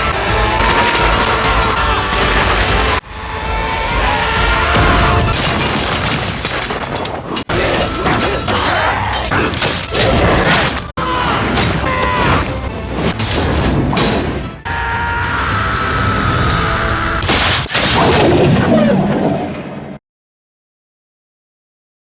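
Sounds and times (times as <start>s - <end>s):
shattering: 0.0s - 3.0s, 4.4s - 10.9s
dramatic music: 0.0s - 6.0s, 7.5s - 18.1s
impacts and booms: 4.2s - 8.5s.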